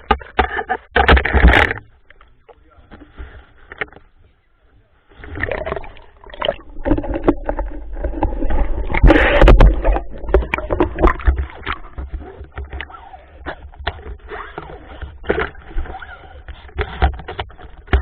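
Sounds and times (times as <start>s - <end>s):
sharp knocks and clicks: 0.0s - 2.6s, 16.7s - 18.0s
water splashing and sloshing: 0.0s - 4.1s, 5.0s - 18.0s
low rumble: 6.3s - 12.0s.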